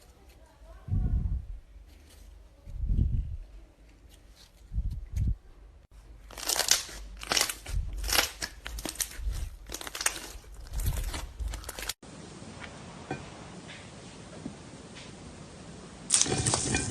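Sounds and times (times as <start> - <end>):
slime crackling and popping: 6.2 - 12.0, 16.1 - 16.9.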